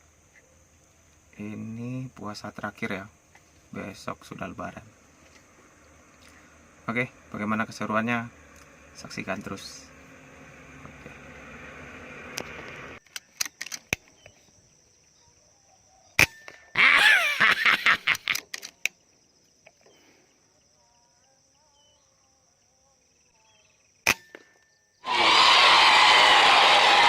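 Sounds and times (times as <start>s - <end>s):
faint bird calls: 16.8s - 18.4s.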